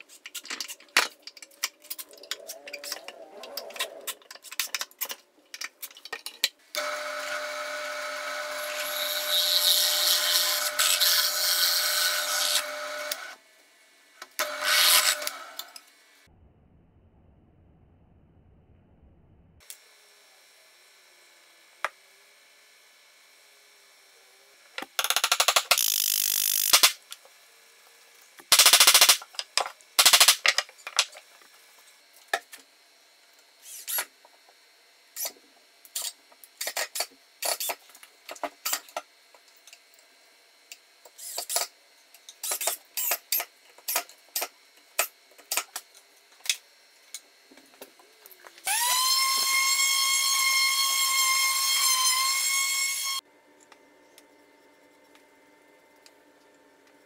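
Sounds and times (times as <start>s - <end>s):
motor whine: 6.7s - 9.3s
power tool bursts: 25.0s - 27.0s.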